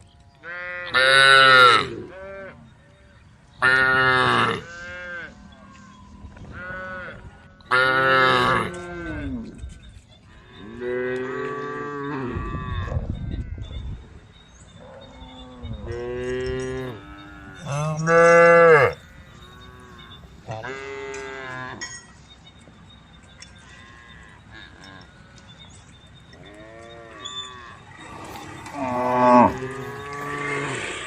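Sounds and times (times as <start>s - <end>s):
cattle mooing: 3.6s - 5.4s, 6.5s - 9.6s, 14.9s - 21.8s, 26.4s - 31.0s.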